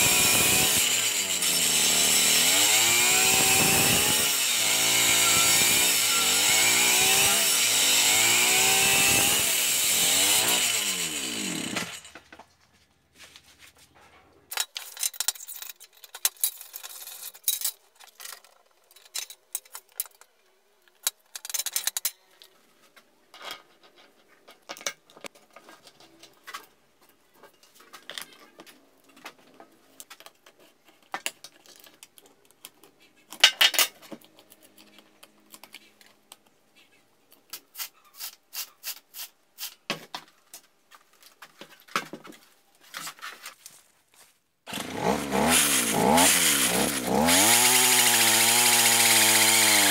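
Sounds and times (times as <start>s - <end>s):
two-stroke engine running: 44.7s - 49.9s.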